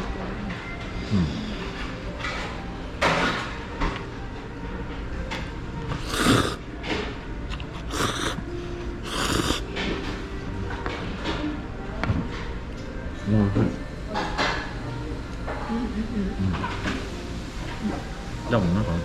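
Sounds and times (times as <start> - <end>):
background music: 0.0 - 19.0
hissing eating noises: 5.9 - 6.7, 7.5 - 9.8.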